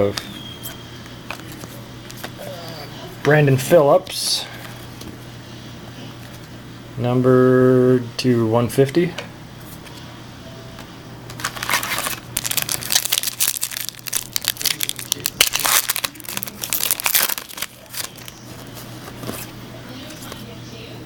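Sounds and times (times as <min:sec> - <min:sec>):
foil wrapper crinkling: 0:11.3 - 0:19.5.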